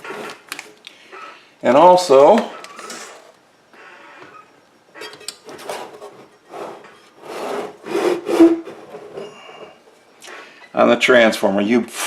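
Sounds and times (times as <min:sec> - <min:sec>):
rubbing and scraping handling noise: 0:00.0 - 0:01.4, 0:02.2 - 0:03.4, 0:05.0 - 0:10.6.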